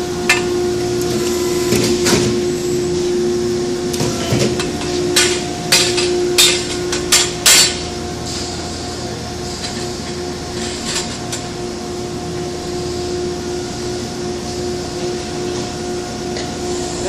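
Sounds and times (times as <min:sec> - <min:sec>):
pipe bending machine humming: 0:00.0 - 0:17.0
sharp metallic clanks: 0:03.9 - 0:08.5.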